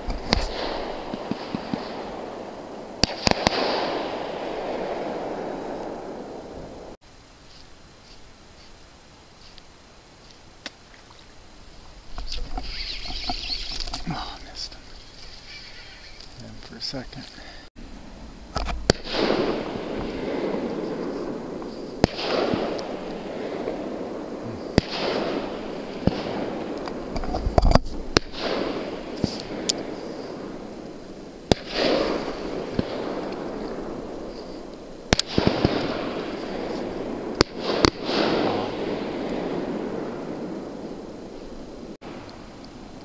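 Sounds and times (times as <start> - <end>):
fireworks cracking and rumbling: 0.0 - 8.8, 11.8 - 43.0.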